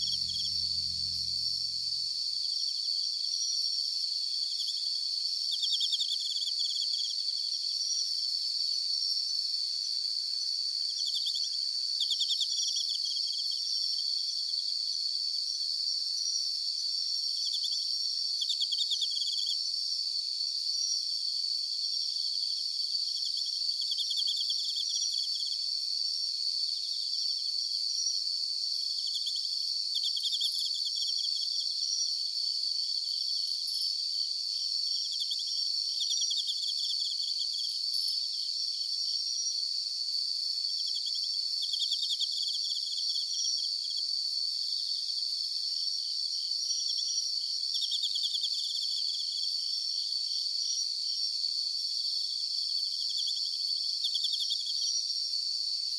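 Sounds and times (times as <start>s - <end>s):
pulsed insect trills: 0.0s - 20.0s
high-pitched cricket trill: 0.0s - 55.9s.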